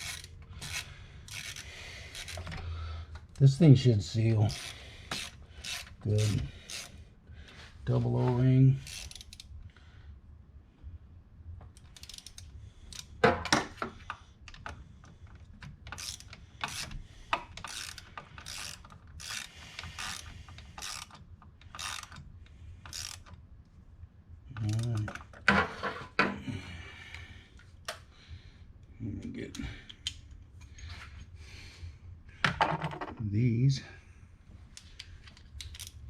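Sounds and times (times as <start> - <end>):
socket ratchet clicking: 0.0 - 2.6, 4.5 - 7.0, 8.8 - 9.5, 11.7 - 13.2, 15.6 - 23.4, 24.5 - 25.3, 34.8 - 36.0.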